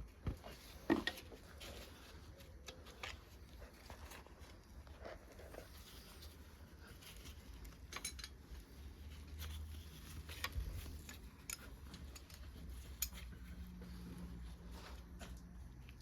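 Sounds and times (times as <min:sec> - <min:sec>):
metallic clicks of tools: 0:07.9 - 0:08.4.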